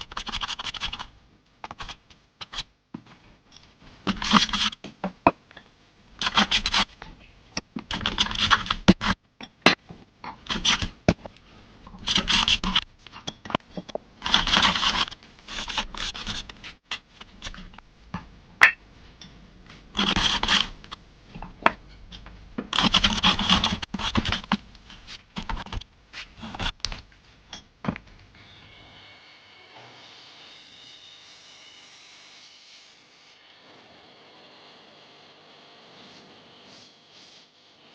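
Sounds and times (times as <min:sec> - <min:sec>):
wood being scraped by hand: 0:12.0 - 0:12.9, 0:14.2 - 0:17.7, 0:20.0 - 0:20.8, 0:22.7 - 0:26.8.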